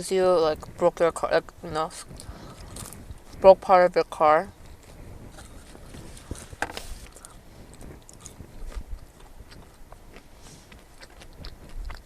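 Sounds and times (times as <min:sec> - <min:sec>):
chewing and wet mouth clicks: 0:07.1 - 0:12.0.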